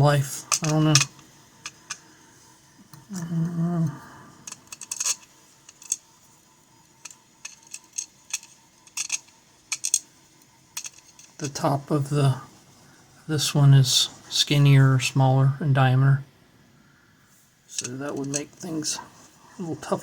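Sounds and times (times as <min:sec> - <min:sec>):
light metallic clicks of lock tools: 0:00.5 - 0:02.0, 0:07.0 - 0:10.1
person humming: 0:03.1 - 0:04.2.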